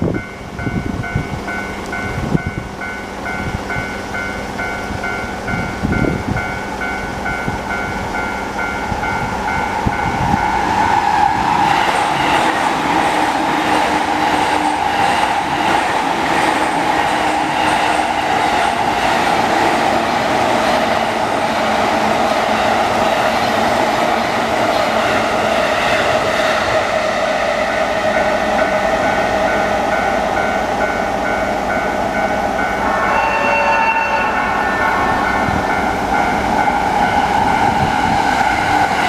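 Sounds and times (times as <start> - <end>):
level crossing warning bell: 0.0 - 10.7, 27.7 - 39.0
train wheels rushing on rail: 0.0 - 39.0.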